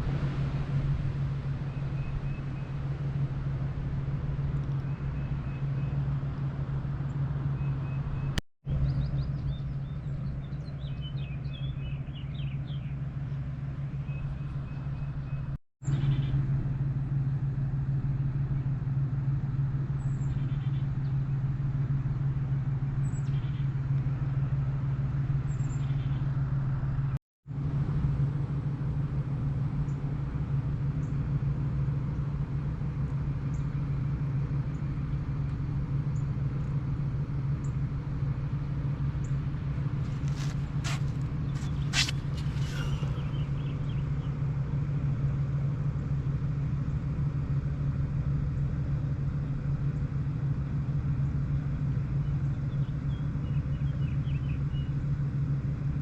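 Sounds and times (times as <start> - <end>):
engine humming: 0.0 - 56.0
birds chirping: 39.2 - 44.4.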